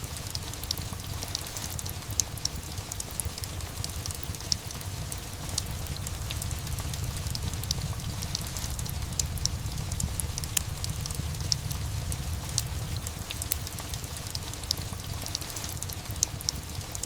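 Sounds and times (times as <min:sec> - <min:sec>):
steady rain hiss: 0:00.0 - 0:17.0
wood fire crackling and popping: 0:00.0 - 0:17.0
low rumble: 0:04.9 - 0:14.5.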